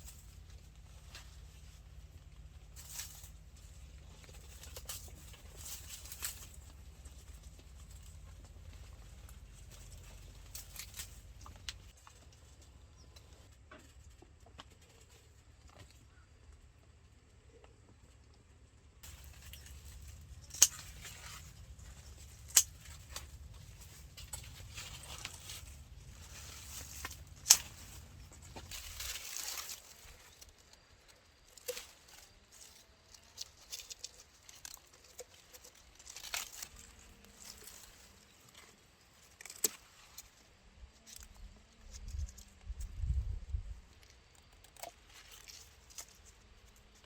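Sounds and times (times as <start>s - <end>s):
low hum: 0.0s - 13.2s, 19.0s - 30.4s
rustling and handling noises: 0.0s - 16.3s, 19.0s - 47.0s.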